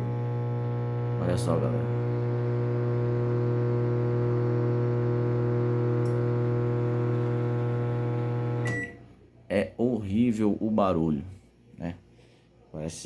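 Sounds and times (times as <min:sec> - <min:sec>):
microwave oven electrical hum: 0:00.0 - 0:09.1
microwave click: 0:05.9 - 0:06.5, 0:08.2 - 0:09.0
short beep: 0:08.7 - 0:09.0.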